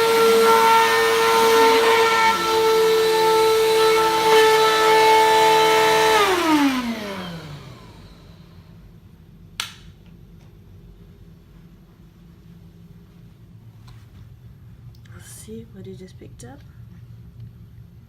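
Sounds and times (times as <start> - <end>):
vacuum cleaner whining: 0.0 - 8.8
vacuum motor winding down: 0.0 - 8.8
sharp click: 9.6 - 9.9.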